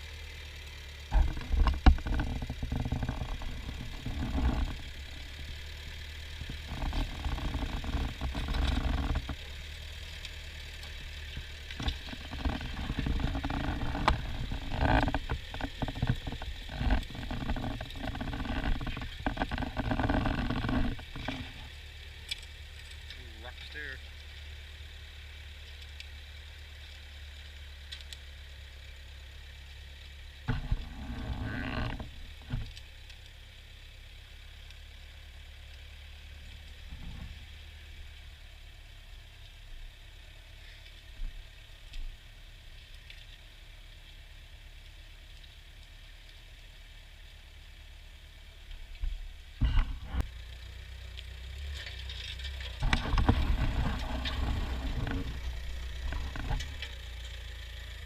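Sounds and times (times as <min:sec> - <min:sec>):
tractor engine droning: 0:00.0 - 0:58.0.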